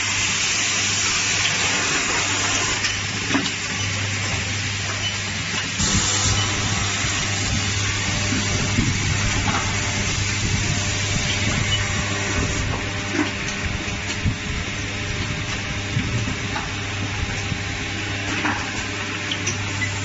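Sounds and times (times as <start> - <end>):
electrical hum: 0.0 - 20.0
air hiss: 5.8 - 12.7.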